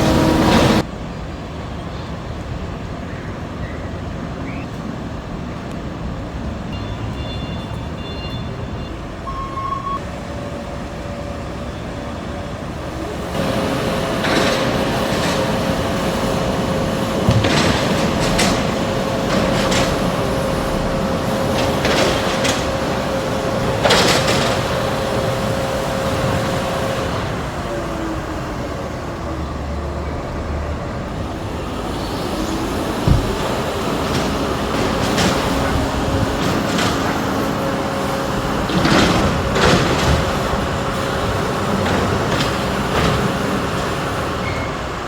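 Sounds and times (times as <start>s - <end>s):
machine hum: 0.0s - 0.8s
engine rumble: 0.0s - 3.0s, 9.0s - 45.0s.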